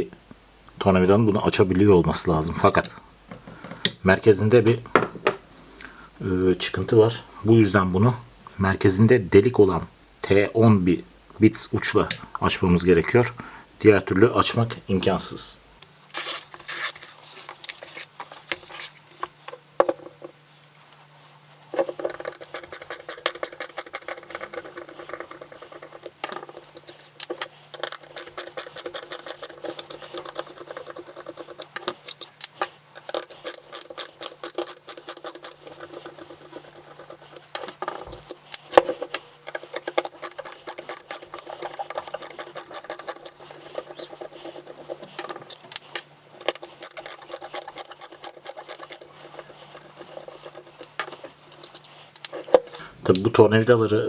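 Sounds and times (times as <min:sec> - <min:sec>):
screwdriver clicking and scratching: 0:15.8 - 0:52.8.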